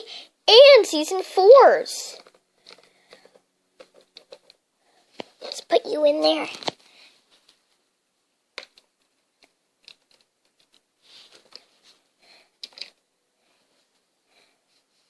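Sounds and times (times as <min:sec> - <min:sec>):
small toys clicking and rustling: 0:02.1 - 0:04.6, 0:08.6 - 0:11.8, 0:12.6 - 0:13.0.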